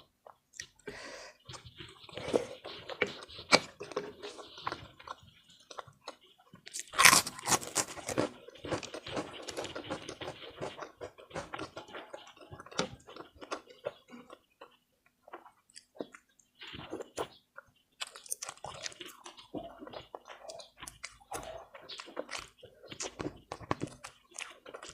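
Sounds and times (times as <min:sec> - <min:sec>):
food crunching: 0:01.5 - 0:24.9
chewing with wet mouth smacks: 0:18.0 - 0:24.9.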